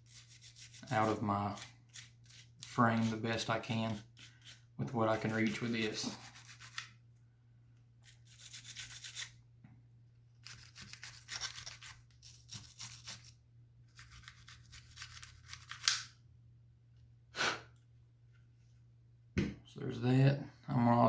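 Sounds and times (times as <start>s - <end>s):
plastic brush scrubbing: 0.0s - 7.0s.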